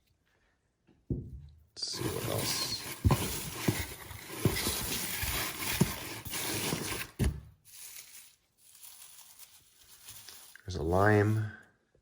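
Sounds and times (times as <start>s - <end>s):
hands rustling packaging: 1.9s - 10.7s.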